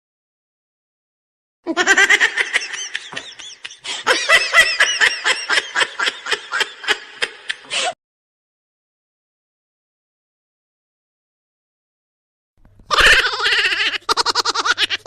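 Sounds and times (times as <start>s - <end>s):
high-pitched laughter: 1.7s - 8.0s, 12.9s - 15.0s.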